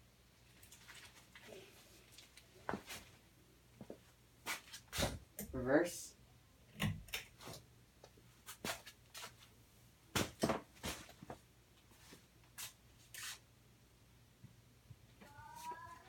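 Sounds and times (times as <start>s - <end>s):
fan clicking and knocking: 6.8s - 7.3s.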